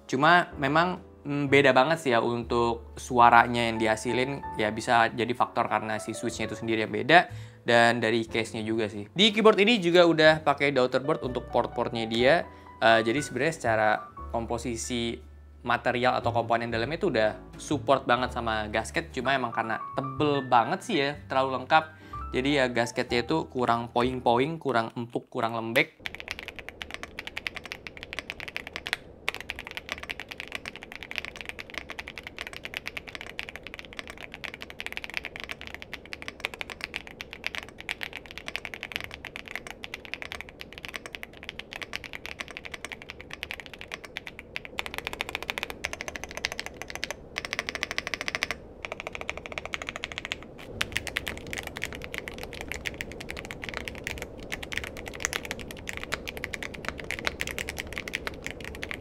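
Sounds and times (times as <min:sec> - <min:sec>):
mechanical keyboard typing: 0:26.0 - 0:59.0.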